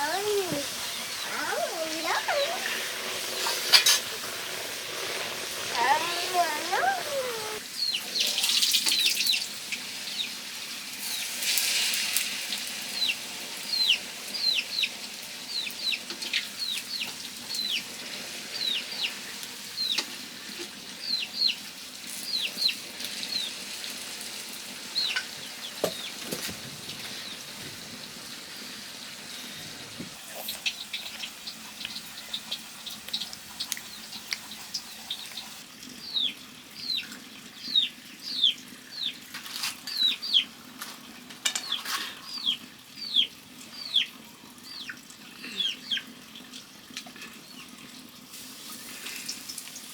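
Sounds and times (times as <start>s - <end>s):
bread frying in oil: 0.0s - 49.9s
chicks peeping: 5.8s - 9.4s, 13.0s - 17.8s, 18.6s - 19.2s, 19.8s - 20.0s, 21.0s - 21.6s, 22.3s - 23.6s, 25.0s - 26.2s, 40.0s - 40.5s, 41.7s - 44.1s, 44.7s - 46.1s.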